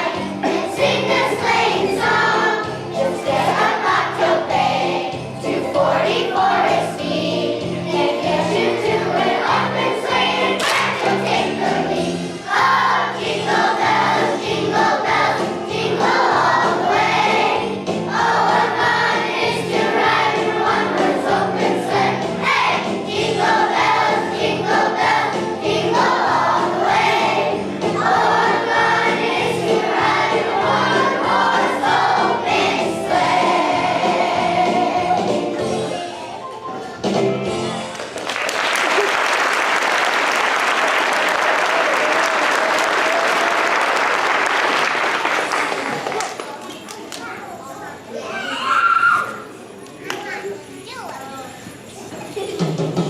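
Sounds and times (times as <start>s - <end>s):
children's choir singing: 0.0s - 36.2s.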